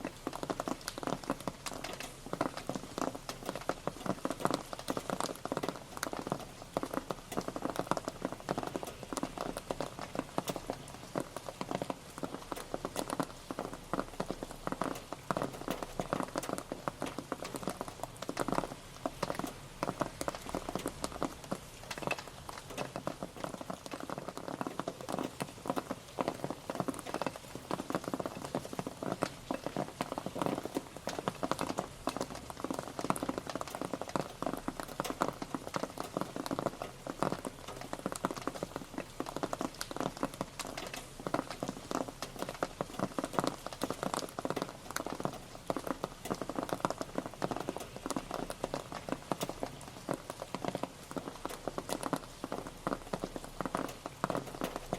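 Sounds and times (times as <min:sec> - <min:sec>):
rain on a hard surface: 0:00.0 - 0:54.9.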